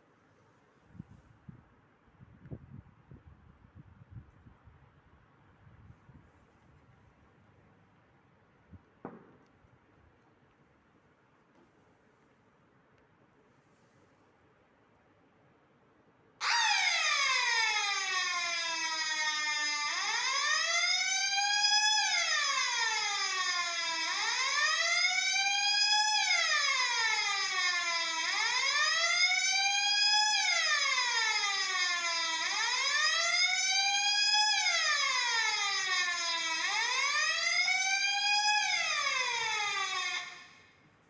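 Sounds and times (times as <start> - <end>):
electronic fire alarm siren: 16.4 - 40.7.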